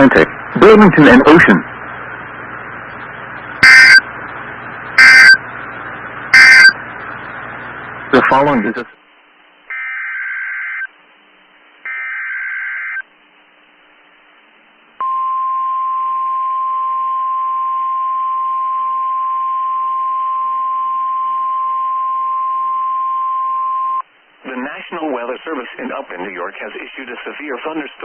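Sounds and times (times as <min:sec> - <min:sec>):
screeching digital data bursts: 0:03.6 - 0:04.0, 0:05.0 - 0:05.4, 0:06.3 - 0:06.8
steady warning alarm tone: 0:03.6 - 0:04.1, 0:05.0 - 0:05.4, 0:06.3 - 0:06.8, 0:11.9 - 0:13.0.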